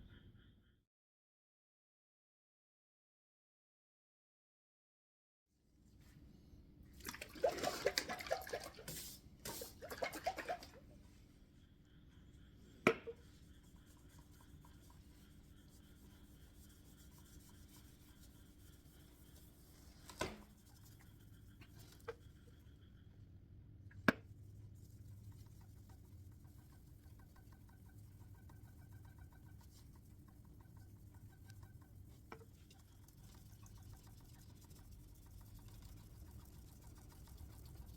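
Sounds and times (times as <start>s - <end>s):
faint steady hum: 5.7s - 37.9s
cloth rubbing on metal: 13.2s - 22.4s, 24.5s - 37.9s.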